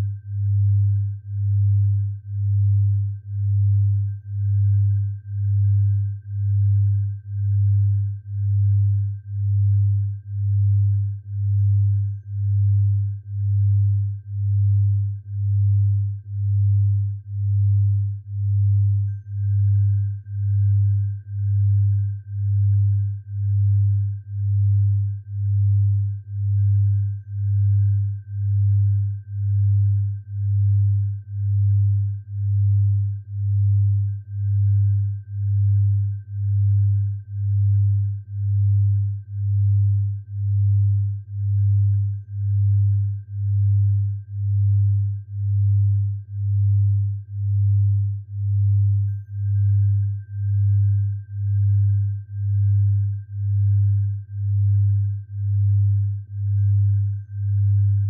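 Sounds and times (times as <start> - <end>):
deep pulsing pure tone: 0.0 - 58.0
faint steady high tone: 0.0 - 58.0.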